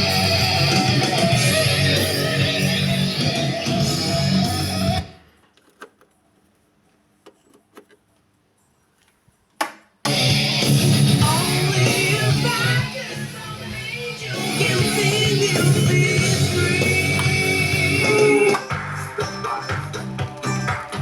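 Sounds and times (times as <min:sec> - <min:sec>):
guitar music from radio: 0:00.0 - 0:05.4, 0:10.1 - 0:21.0.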